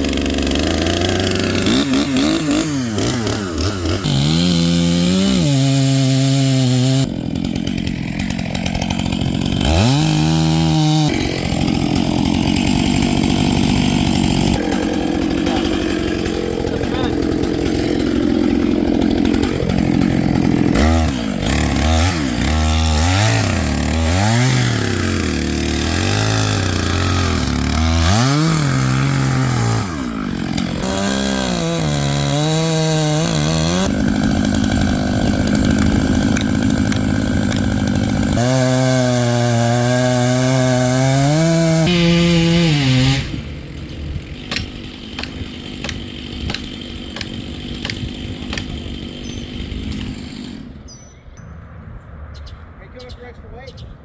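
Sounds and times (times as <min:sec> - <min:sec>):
chainsaw cutting into trunk: 0:00.0 - 0:51.0.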